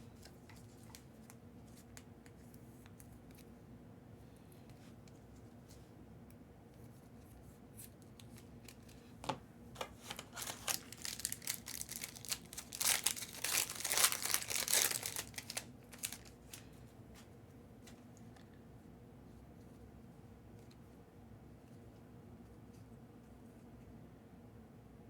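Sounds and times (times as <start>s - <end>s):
foil wrapper tearing and crinkling: 10.0s - 16.6s.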